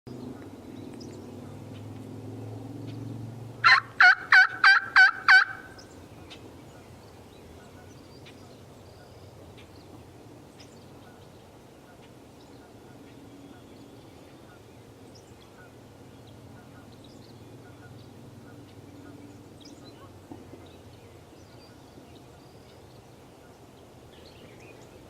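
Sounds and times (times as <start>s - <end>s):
low steady hum: 0.1s - 25.0s
turkey calling: 3.6s - 5.9s.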